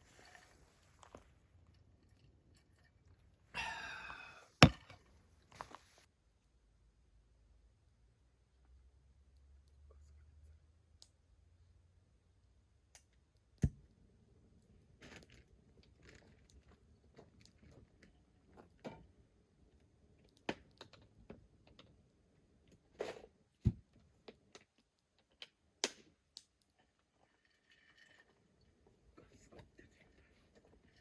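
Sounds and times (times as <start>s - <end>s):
small objects clicking and knocking: 23.9s - 31.0s.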